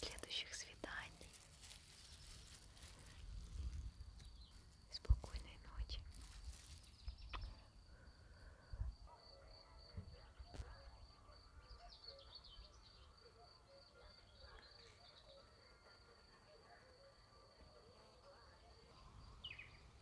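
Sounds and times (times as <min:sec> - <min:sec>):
soft bird chirps: 0:00.0 - 0:08.5, 0:10.4 - 0:16.1, 0:18.0 - 0:20.0.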